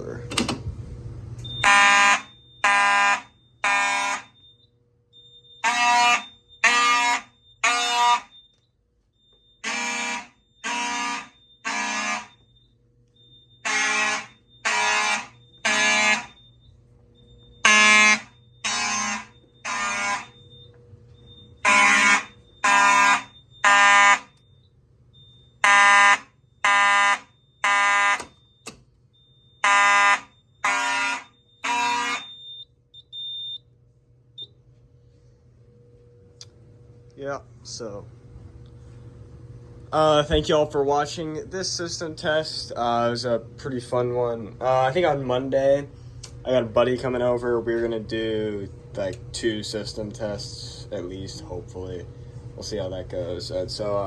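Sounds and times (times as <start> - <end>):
fire alarm horn blasts: 1.4 - 33.7.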